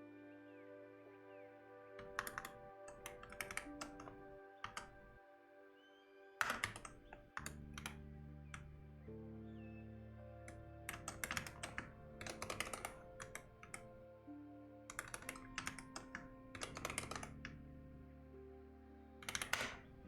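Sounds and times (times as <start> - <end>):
soft background music: 0.0 - 20.0
keyboard typing: 2.0 - 5.2, 6.4 - 8.8, 10.4 - 14.1, 14.9 - 18.1, 19.2 - 20.0.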